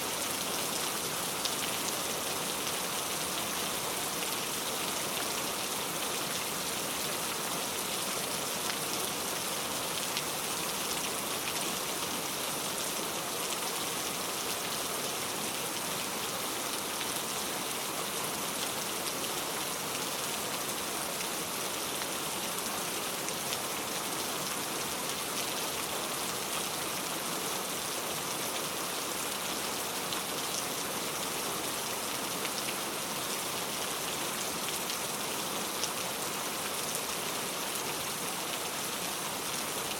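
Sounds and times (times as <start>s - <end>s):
steady rainfall: 0.0s - 39.9s.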